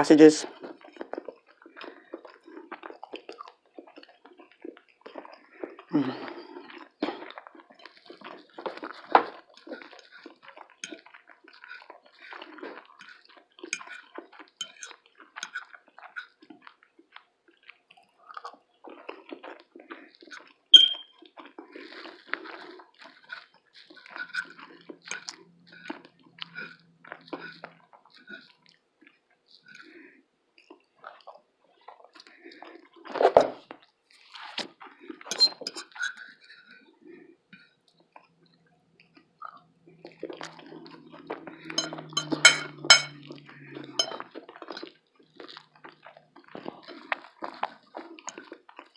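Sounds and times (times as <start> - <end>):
person chewing food: 0.4 - 48.9
sharp clink: 20.8 - 21.0, 41.8 - 43.1.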